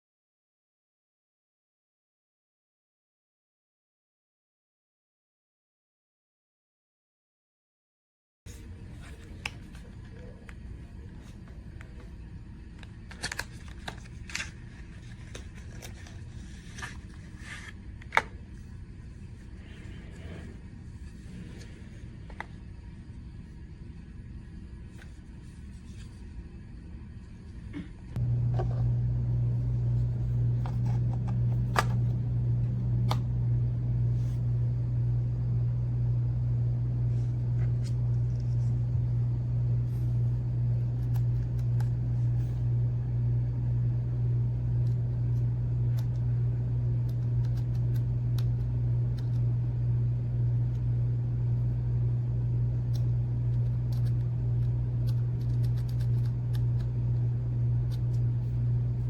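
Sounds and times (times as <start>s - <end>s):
steady low hum: 8.5s - 59.0s.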